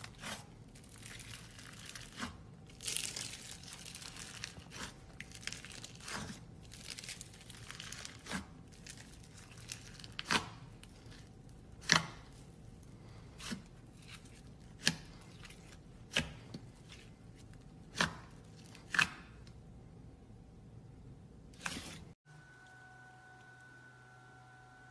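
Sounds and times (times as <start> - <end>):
slime crackling: 0.0 - 19.0.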